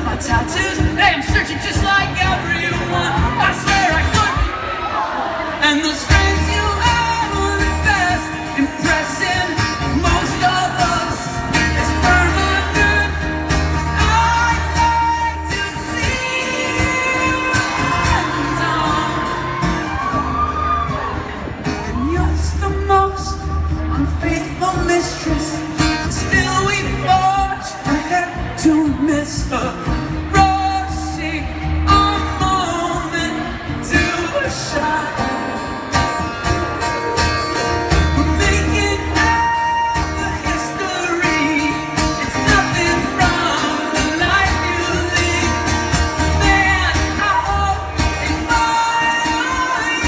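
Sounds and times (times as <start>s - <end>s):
live rock band: 0.0s - 50.0s
person singing: 5.6s - 20.9s, 37.9s - 50.0s
heavy bass: 6.1s - 50.0s.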